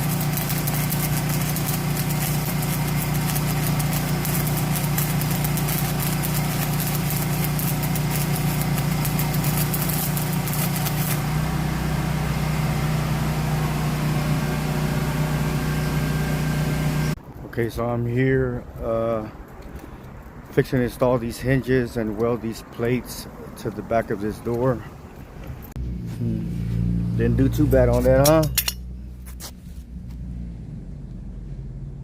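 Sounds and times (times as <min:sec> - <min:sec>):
crackling hiss: 0:00.0 - 0:11.2
engine idling: 0:00.0 - 0:16.2.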